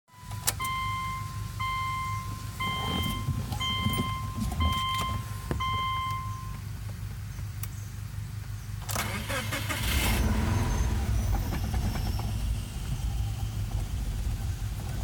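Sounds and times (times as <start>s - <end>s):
car warning chime beeping: 0.1s - 6.7s
car engine rough idle: 6.8s - 15.0s.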